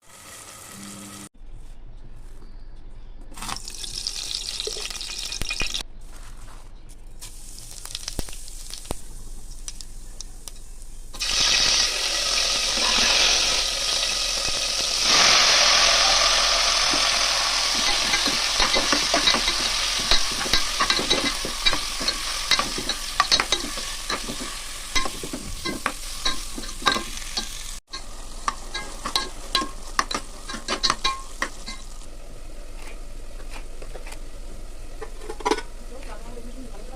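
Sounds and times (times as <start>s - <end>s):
food sizzling in a pan: 0.0s - 1.3s, 3.6s - 5.8s, 7.2s - 32.1s
spoon scraping a pan: 12.6s - 13.6s, 16.7s - 32.0s.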